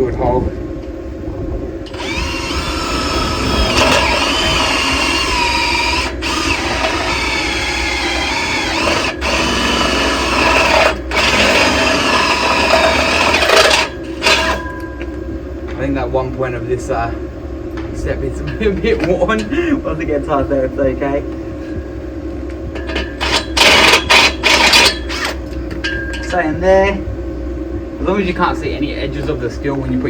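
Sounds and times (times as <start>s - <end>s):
power drill cutting steel: 1.9s - 14.6s, 23.2s - 25.4s.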